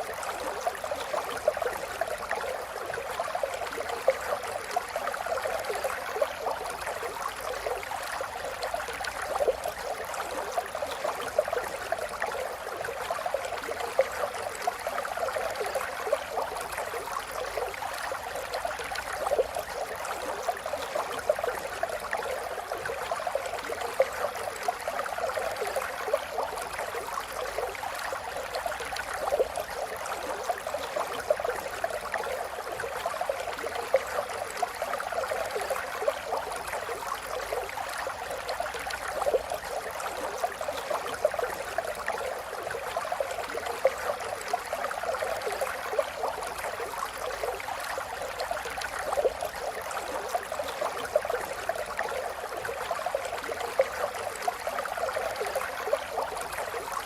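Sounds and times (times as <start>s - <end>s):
river water babbling over stones: 0.0s - 57.0s.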